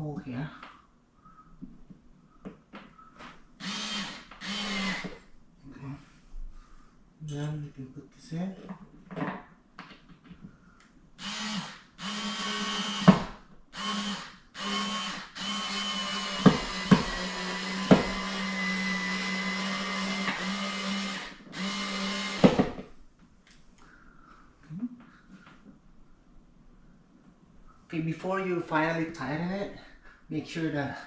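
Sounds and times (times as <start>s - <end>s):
cordless drill driving screw into wood: 3.6s - 5.2s, 11.2s - 22.9s.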